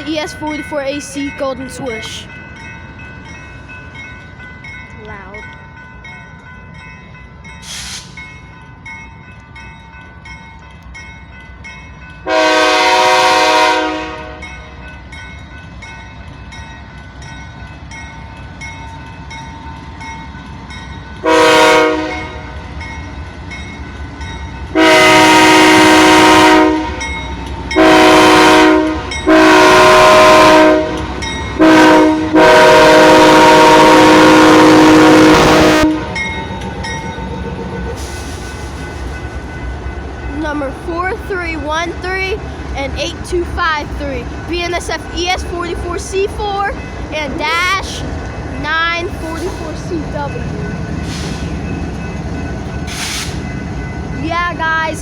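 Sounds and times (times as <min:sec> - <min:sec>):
passing train rumbling: 0:00.0 - 0:55.0
locomotive air horn blasts: 0:12.3 - 0:14.5, 0:21.2 - 0:22.4, 0:24.8 - 0:27.0, 0:27.8 - 0:36.2.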